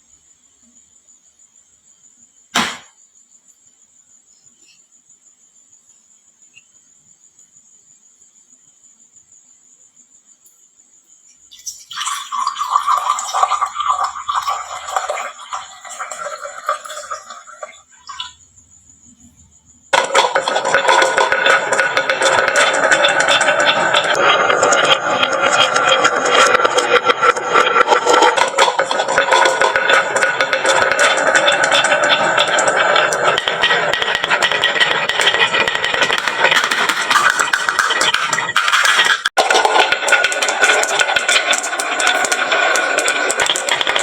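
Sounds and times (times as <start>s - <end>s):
sharp knock: 2.5s - 3.0s
marbles clattering on wood: 11.6s - 18.4s, 20.0s - 44.0s.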